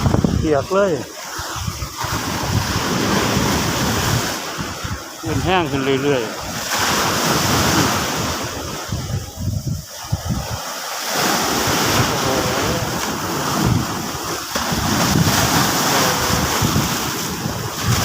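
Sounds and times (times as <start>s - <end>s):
sea surf breaking: 0.0s - 18.0s
wind buffeting microphone: 0.0s - 18.0s.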